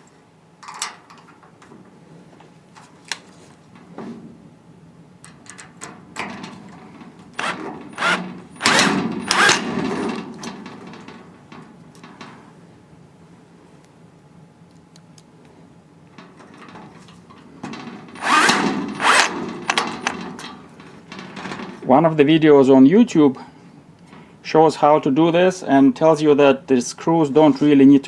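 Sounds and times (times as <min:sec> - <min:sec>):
clicks and knocks of metal parts: 0:00.6 - 0:01.8, 0:05.2 - 0:12.4, 0:16.2 - 0:21.9
power screwdriver driving screws: 0:07.4 - 0:10.1, 0:18.2 - 0:20.1.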